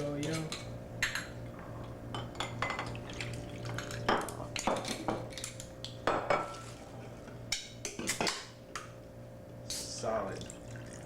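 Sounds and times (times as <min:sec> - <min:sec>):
steady low hum: 0:00.0 - 0:11.0
glassware clinking: 0:02.1 - 0:03.0, 0:06.0 - 0:06.6.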